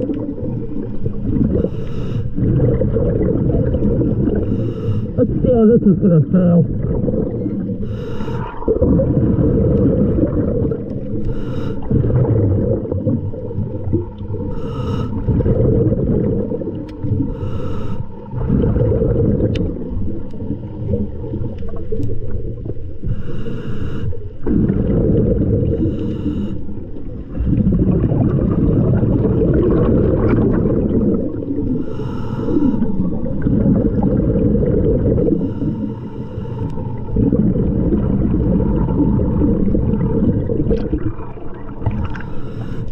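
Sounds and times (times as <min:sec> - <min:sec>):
rumble of exhaled bubbles: 0:00.0 - 0:42.9
regulator breath hiss: 0:01.6 - 0:02.3, 0:04.4 - 0:05.2, 0:07.8 - 0:08.6, 0:11.2 - 0:11.9, 0:14.5 - 0:15.3, 0:17.3 - 0:18.2, 0:23.1 - 0:24.2, 0:25.8 - 0:26.7, 0:31.8 - 0:32.9, 0:35.4 - 0:36.8, 0:42.2 - 0:42.9.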